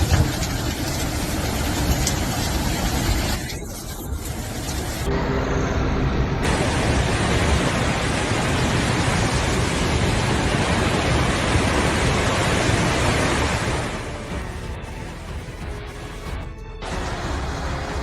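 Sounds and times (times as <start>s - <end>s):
loud rushing noise: 5.0s - 18.0s.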